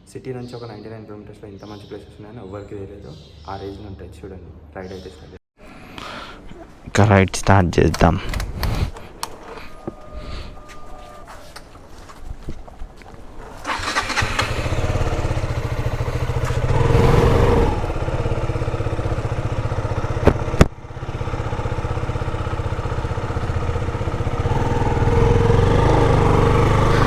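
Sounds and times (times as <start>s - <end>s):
motorcycle engine idling: 13.6s - 27.0s.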